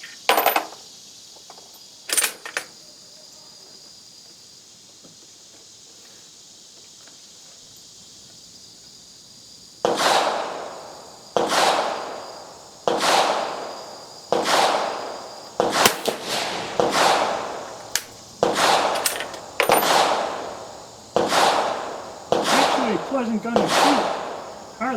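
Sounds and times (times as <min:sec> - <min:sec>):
faint crickets: 0:00.0 - 0:24.9
rifle shots echoing: 0:09.8 - 0:24.9.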